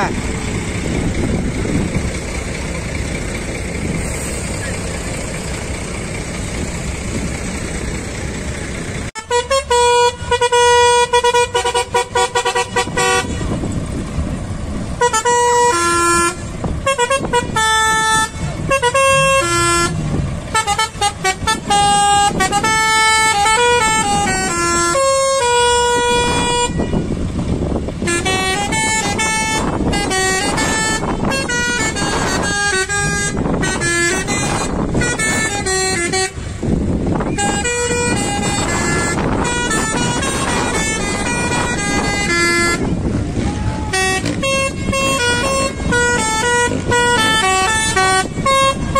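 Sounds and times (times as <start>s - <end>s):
multi-tone air horn playing a tune: 9.2s - 13.6s, 15.0s - 27.1s, 28.0s - 36.5s, 37.1s - 48.9s.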